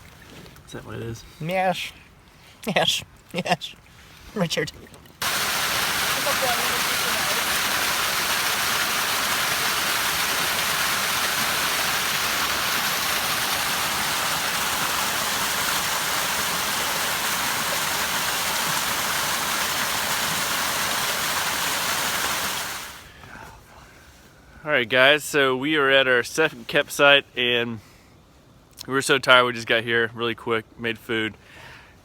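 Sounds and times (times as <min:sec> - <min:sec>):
creek water rushing: 0:02.7 - 0:23.2.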